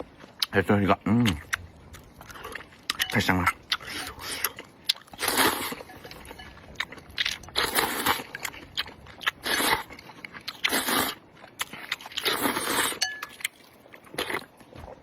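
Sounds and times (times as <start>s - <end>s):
wet chewing clicks: 0.0s - 15.0s
noodles being slurped: 3.7s - 6.2s, 9.2s - 15.0s.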